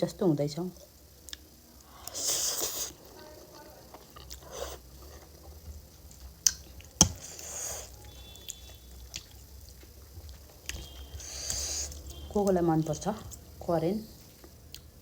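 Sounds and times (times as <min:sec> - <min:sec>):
person chewing noodles: 0:01.3 - 0:12.3.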